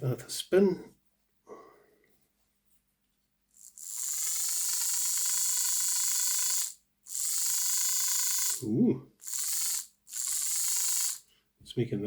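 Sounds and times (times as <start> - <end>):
model locomotive motor whine: 3.6 - 8.6, 9.2 - 11.2.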